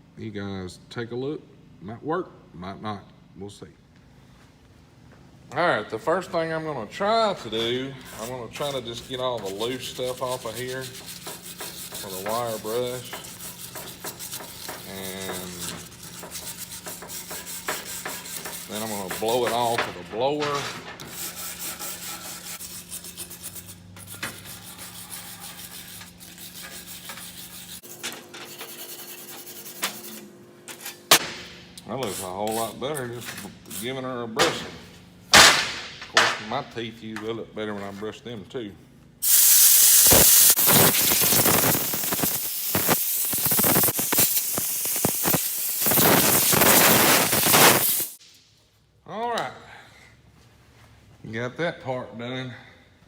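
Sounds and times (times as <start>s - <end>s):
wire brush scrubbing metal: 7.4s - 31.1s, 32.0s - 34.0s, 39.2s - 48.2s
air blower hissing: 39.2s - 48.2s.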